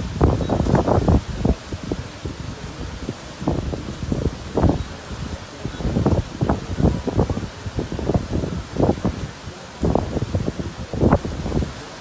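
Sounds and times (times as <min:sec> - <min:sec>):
gusty wind buffeting microphone: 0:00.0 - 0:12.0.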